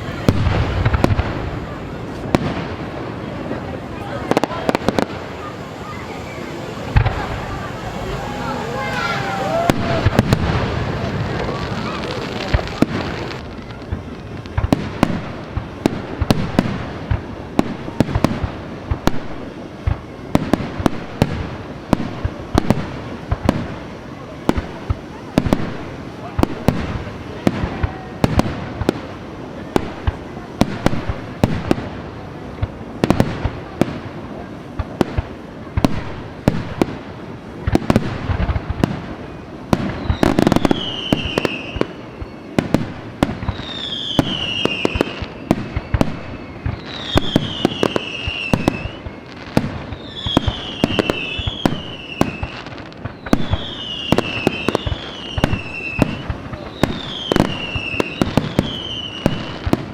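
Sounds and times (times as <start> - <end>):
fireworks bangs and crackles: 0.0 - 59.9
falling firework whistles: 4.0 - 29.0, 37.7 - 59.9.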